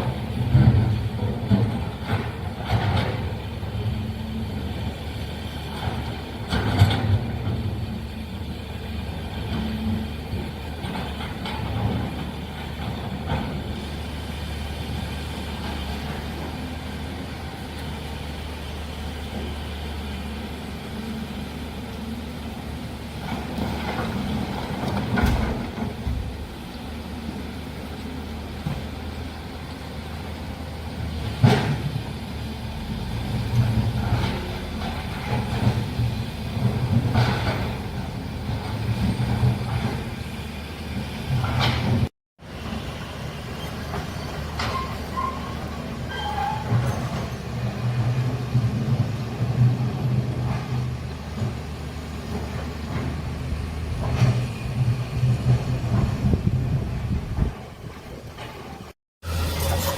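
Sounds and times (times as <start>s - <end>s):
diesel engine drone: 0.0s - 59.9s
machinery knocks and clanks: 5.8s - 7.9s, 9.4s - 13.8s, 23.2s - 26.6s, 31.2s - 32.1s, 33.5s - 40.3s, 40.9s - 42.1s, 43.8s - 59.9s.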